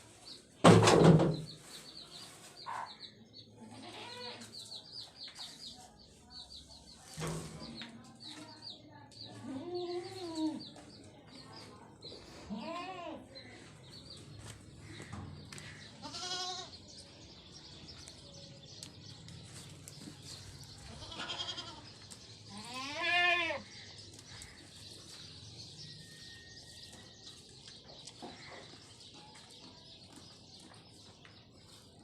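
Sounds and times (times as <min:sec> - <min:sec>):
goats bleating: 0:03.7 - 0:04.4, 0:16.0 - 0:16.8, 0:20.9 - 0:21.9, 0:22.5 - 0:23.7.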